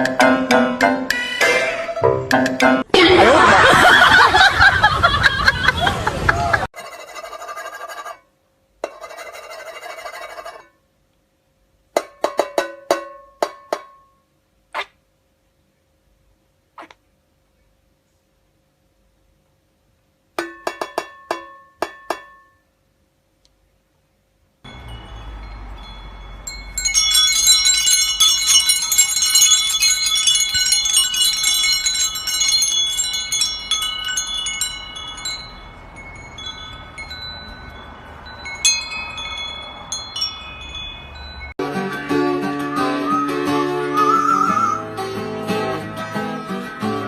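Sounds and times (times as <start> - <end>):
wind chimes tinkling: 24.6 - 41.6.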